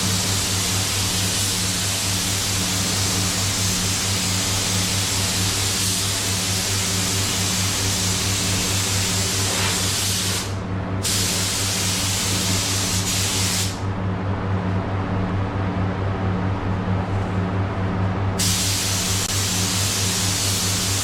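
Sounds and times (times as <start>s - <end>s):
steady low hum: 0.0s - 21.0s
paint spray gun hissing: 3.6s - 13.8s, 18.4s - 21.0s.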